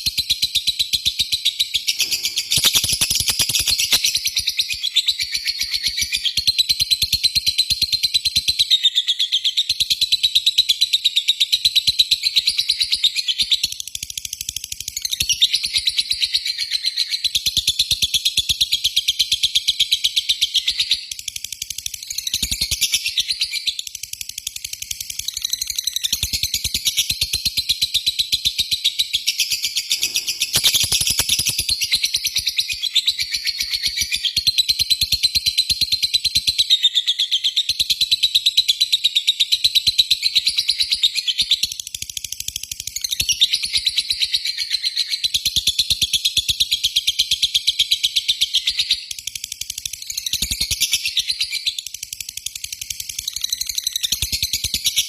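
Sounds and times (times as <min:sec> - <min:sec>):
lovebird chattering trill: 0:01.8 - 0:04.4, 0:29.4 - 0:32.1.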